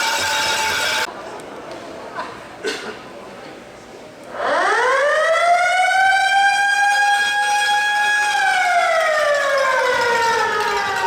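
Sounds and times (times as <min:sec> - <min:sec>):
arena siren wailing: 0:04.4 - 0:11.0.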